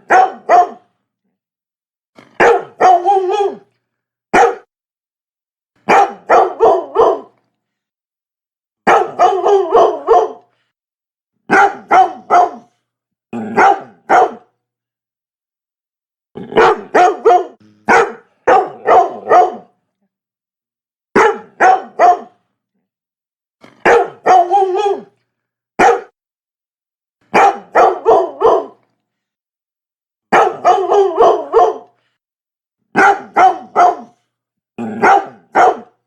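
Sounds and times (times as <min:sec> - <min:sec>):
dog barking: 0:00.0 - 0:00.9, 0:02.4 - 0:03.7, 0:04.3 - 0:04.7, 0:05.8 - 0:07.4, 0:08.8 - 0:10.5, 0:11.5 - 0:12.8, 0:13.5 - 0:14.5, 0:16.5 - 0:19.8, 0:21.2 - 0:22.4, 0:23.8 - 0:25.1, 0:25.8 - 0:26.2, 0:27.3 - 0:28.8, 0:30.3 - 0:32.0, 0:32.9 - 0:34.2, 0:34.9 - 0:36.0.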